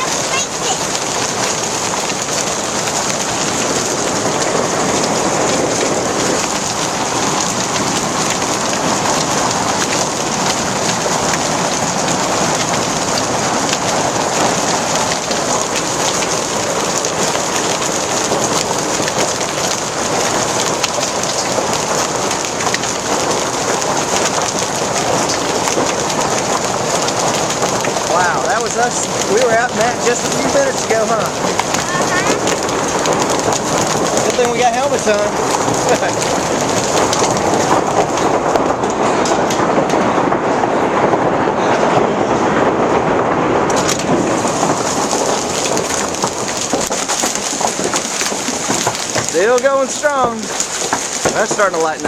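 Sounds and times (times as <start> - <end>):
hail and rain pelting down: 0.0 - 52.0.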